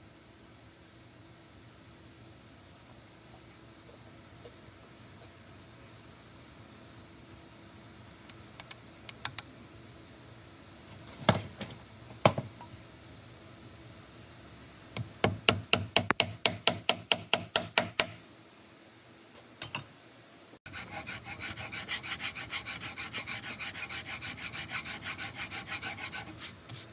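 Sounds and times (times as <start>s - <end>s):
wood being rasped by hand: 20.7s - 26.5s.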